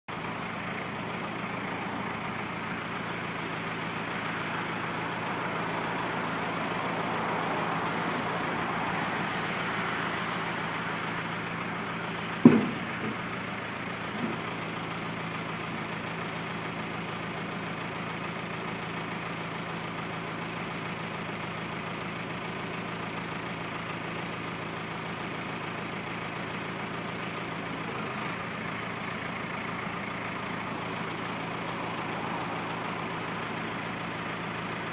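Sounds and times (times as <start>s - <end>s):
diesel engine idling: 0.1s - 34.9s
sharp metallic knock: 12.4s - 13.2s.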